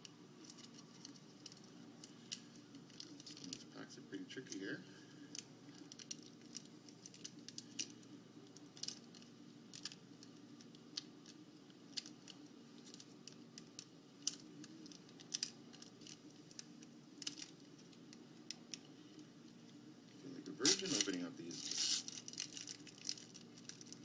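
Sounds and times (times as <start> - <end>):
low steady hum: 0.0 - 24.0
card pack wrapper crinkling: 20.6 - 24.0.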